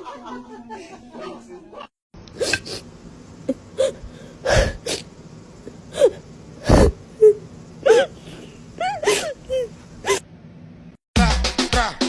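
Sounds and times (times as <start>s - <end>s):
animal snorting: 6.0s - 10.2s
animal whimpering squeaks: 6.0s - 10.2s.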